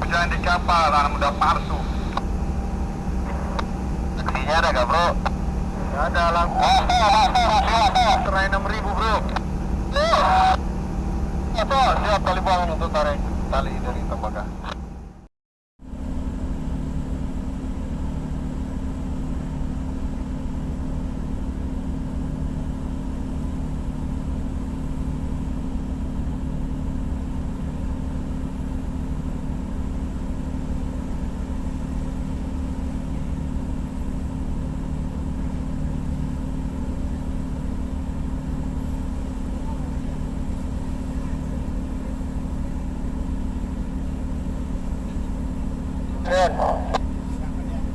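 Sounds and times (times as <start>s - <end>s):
ship diesel engine humming: 0.0s - 15.3s, 28.5s - 47.9s.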